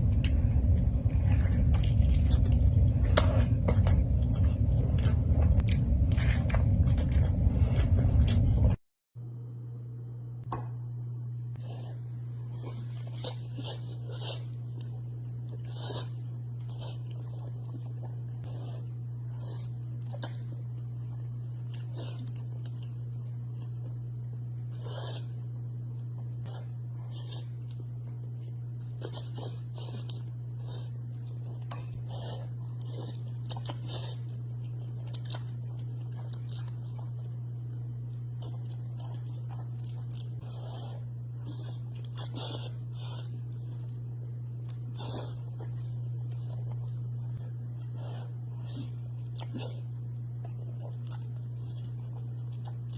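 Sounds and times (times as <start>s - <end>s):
chewing and biting food: 0.0s - 8.8s, 11.9s - 52.9s
steady low hum: 0.0s - 52.9s.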